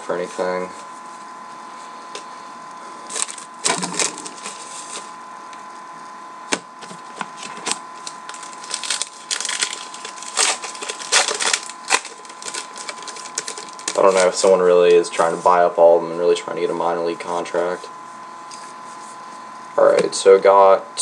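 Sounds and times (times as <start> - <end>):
cards riffling and flicking: 3.1 - 5.1, 6.5 - 14.4.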